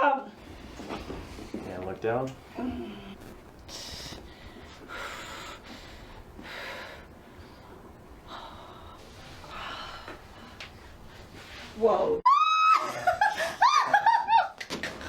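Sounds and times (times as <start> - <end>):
person breathing heavily: 3.7 - 11.3.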